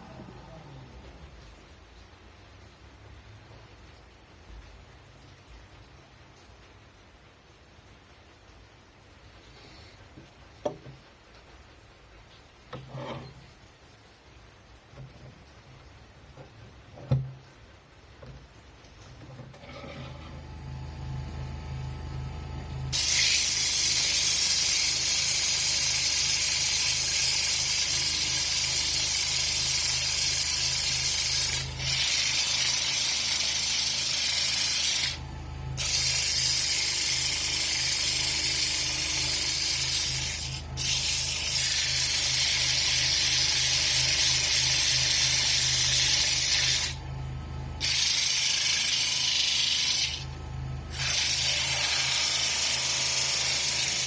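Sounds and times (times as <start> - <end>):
lathe low hum: 0.0 - 1.2, 19.6 - 54.0
wood turning hiss on lathe: 20.1 - 47.0, 47.8 - 50.3, 50.9 - 54.0.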